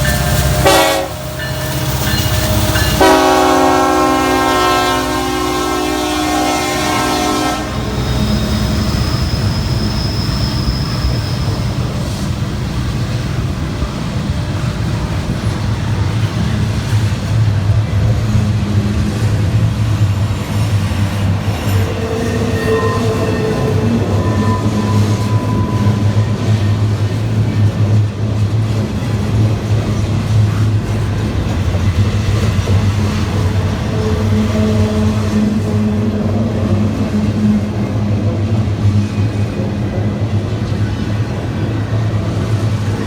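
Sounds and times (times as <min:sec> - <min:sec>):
locomotive horn: 0:00.0 - 0:09.8, 0:21.6 - 0:26.8, 0:33.5 - 0:38.2
diesel locomotives droning: 0:00.0 - 0:43.0
train wheel rumble: 0:00.0 - 0:43.0
faint wheel squeal: 0:07.8 - 0:12.4, 0:21.5 - 0:26.9.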